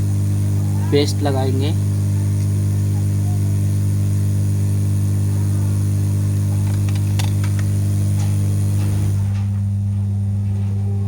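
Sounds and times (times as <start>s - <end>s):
hot-air station humming: 0.0s - 11.0s.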